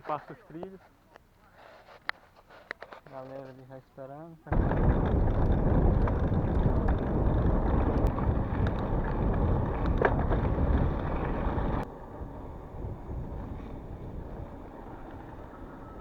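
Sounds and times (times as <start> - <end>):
small ticks and rattles: 4.5 - 11.8
bike tyres rolling on dirt: 4.5 - 16.0
wind rushing over microphone: 4.5 - 16.0.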